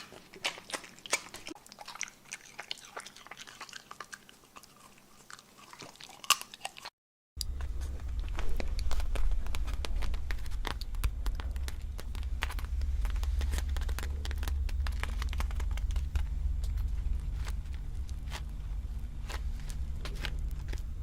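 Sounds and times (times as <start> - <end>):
low rumble: 7.4 - 21.0
small clicks and crinkles: 7.4 - 21.0.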